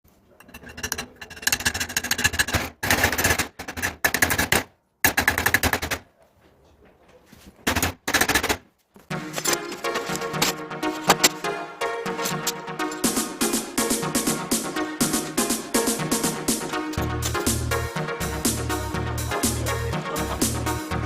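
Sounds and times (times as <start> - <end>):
music: 9.1 - 21.0.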